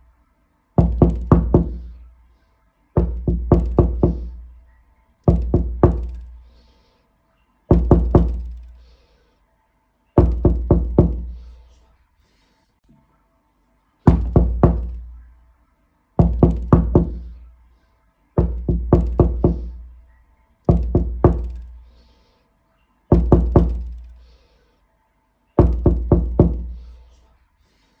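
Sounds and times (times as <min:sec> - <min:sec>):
knocking on a door: 0:00.8 - 0:02.0, 0:03.0 - 0:04.5, 0:05.3 - 0:06.3, 0:07.7 - 0:08.6, 0:10.2 - 0:11.4, 0:14.1 - 0:15.2, 0:16.2 - 0:17.4, 0:18.4 - 0:19.9, 0:20.7 - 0:21.8, 0:23.1 - 0:24.2, 0:25.6 - 0:26.8.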